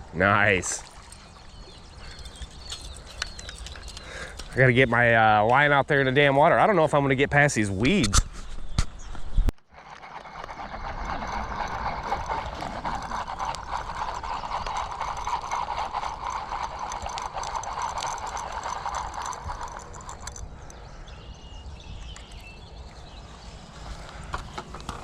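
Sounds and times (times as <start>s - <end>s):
fishing reel whirring: 2.0s - 4.6s, 9.7s - 20.7s.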